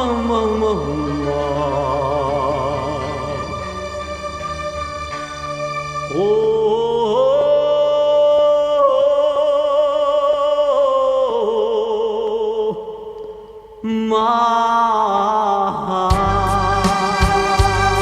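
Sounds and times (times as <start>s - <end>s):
music with held vibrato notes: 0.4s - 6.7s, 16.1s - 18.0s.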